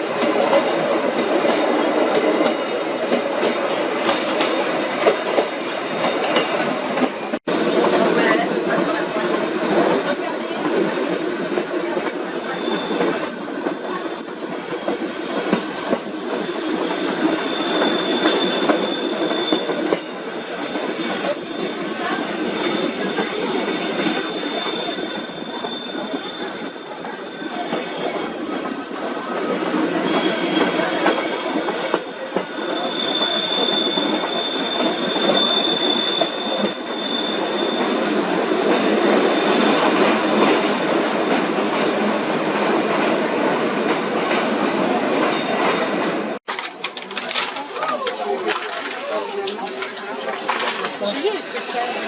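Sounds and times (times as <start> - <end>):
high wheel squeal: 12.3 - 13.4, 16.2 - 40.4.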